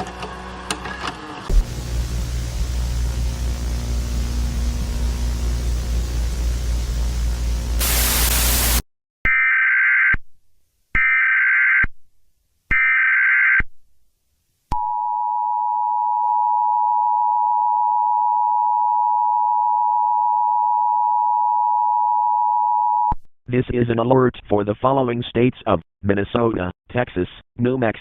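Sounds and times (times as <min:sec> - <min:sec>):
burst of static: 0:01.5 - 0:08.8.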